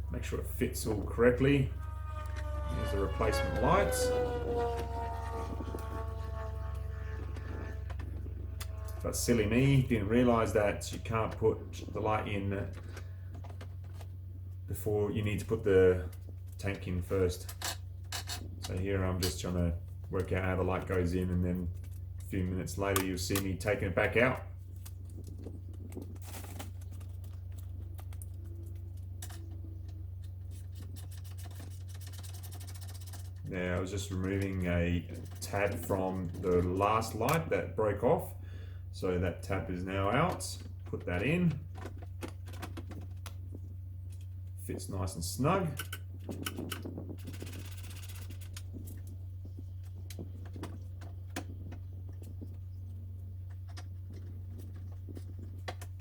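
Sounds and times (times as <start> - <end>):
steady low hum: 0.0 - 56.0
rapid rattle: 24.8 - 34.5, 45.8 - 49.2.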